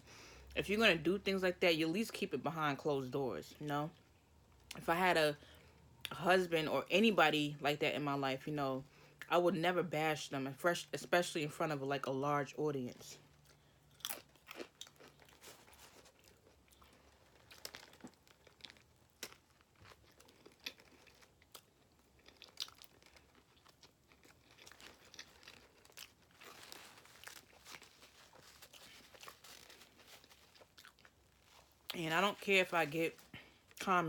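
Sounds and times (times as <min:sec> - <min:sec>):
person chewing food: 0:13.3 - 0:32.0.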